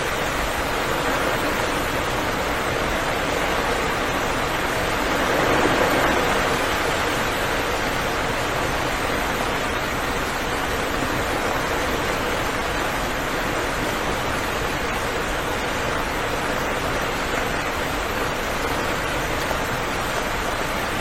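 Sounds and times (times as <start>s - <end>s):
steady rain falling: 0.0s - 21.0s.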